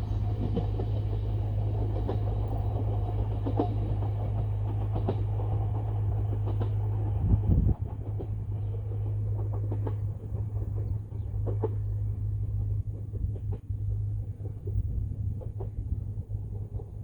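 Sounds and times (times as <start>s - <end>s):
electric train rumble: 0.0s - 17.0s
wheels clicking on rails: 0.0s - 17.0s.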